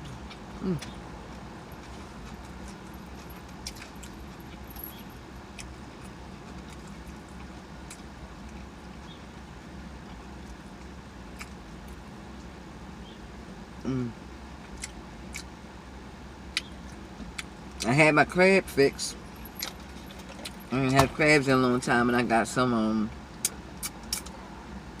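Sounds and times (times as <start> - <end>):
person chewing food: 0.0 - 9.2, 14.6 - 15.5, 19.4 - 20.7
steady low car hum: 0.0 - 25.0.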